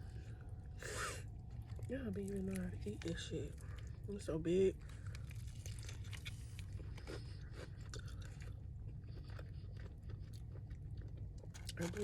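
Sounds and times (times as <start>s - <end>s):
steady low hum: 0.0s - 12.0s
chewing fried chicken: 1.2s - 12.0s
crispy breading crunching: 4.9s - 12.0s.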